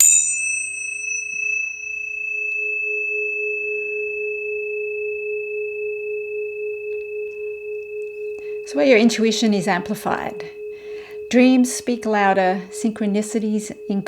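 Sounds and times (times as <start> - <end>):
pure steady tone: 0.0 - 14.0
tuning fork struck: 0.0 - 14.0.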